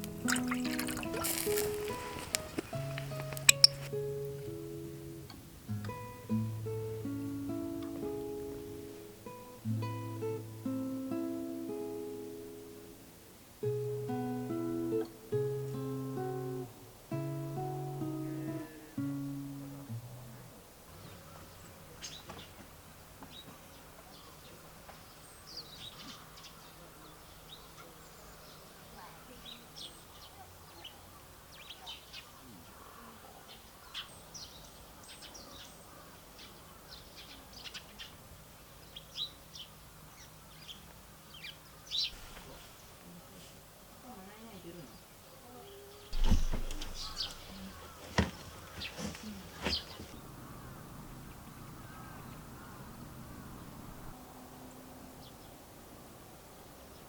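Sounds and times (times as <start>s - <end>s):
birds chirping: 0.0s - 5.3s, 44.6s - 55.6s
acoustic guitar picking: 0.0s - 20.5s, 46.1s - 54.2s.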